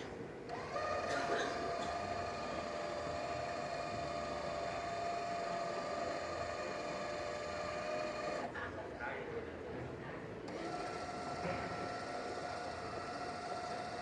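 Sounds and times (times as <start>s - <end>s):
small electric motor humming: 0.5s - 8.5s.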